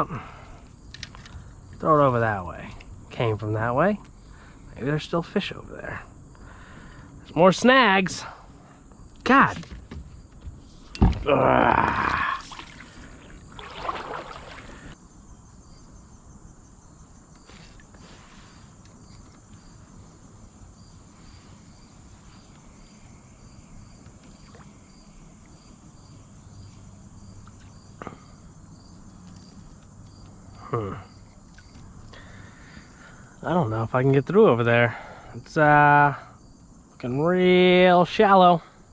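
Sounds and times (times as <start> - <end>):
insects chirping: 0.0 - 38.9.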